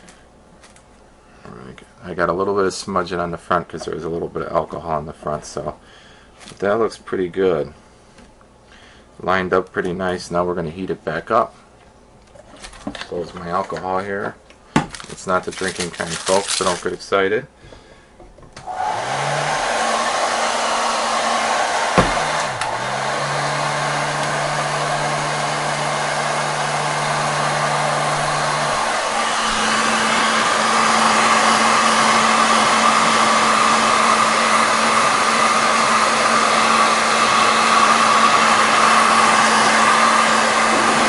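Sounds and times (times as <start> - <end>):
hot-air blower running: 18.6 - 41.0.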